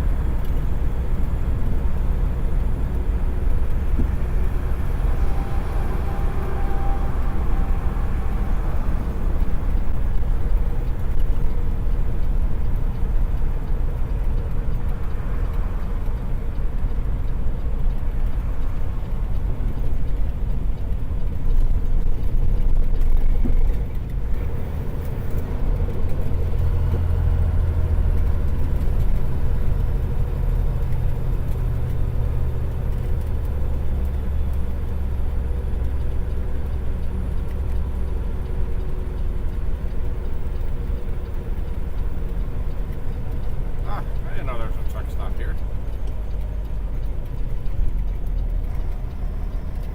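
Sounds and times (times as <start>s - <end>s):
diesel truck engine rumble: 0.0s - 49.9s
road noise: 0.0s - 49.9s.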